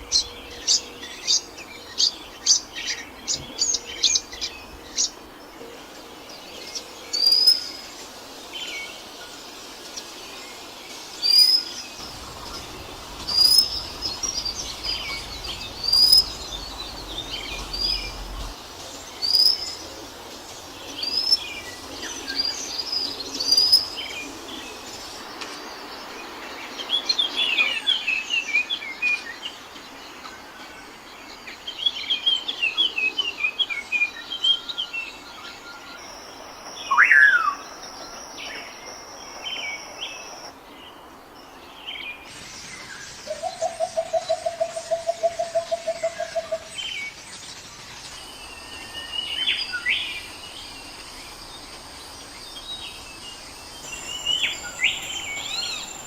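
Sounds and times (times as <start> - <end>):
bird chirps: 11.2 - 20.0, 35.5 - 40.5, 43.2 - 56.0.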